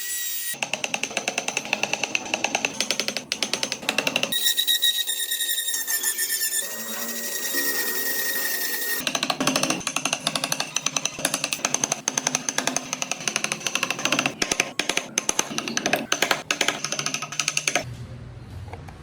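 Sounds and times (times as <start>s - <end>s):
rapid irregular clatter of knocks: 0.6s - 4.4s, 9.0s - 17.8s
power tool whining on wood: 3.8s - 14.4s.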